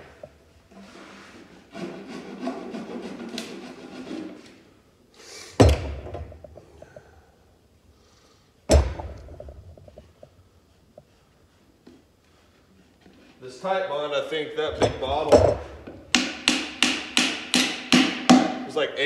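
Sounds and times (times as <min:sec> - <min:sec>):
rubbing and handling on wood: 0:00.0 - 0:04.8, 0:09.0 - 0:17.4
sharp knocks on wood: 0:05.6 - 0:06.4, 0:08.7 - 0:09.6, 0:14.8 - 0:18.7.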